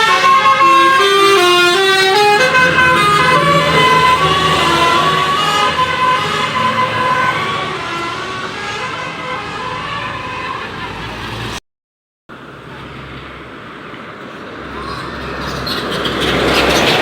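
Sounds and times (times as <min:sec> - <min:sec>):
musical bus air horn: 0:00.0 - 0:11.3
traffic noise: 0:00.0 - 0:11.6, 0:12.3 - 0:17.0.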